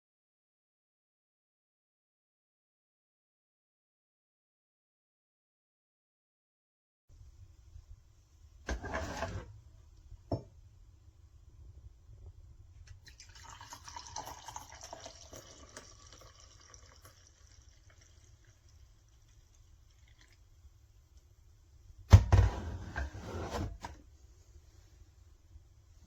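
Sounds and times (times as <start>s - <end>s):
liquid pouring: 13.0s - 20.5s.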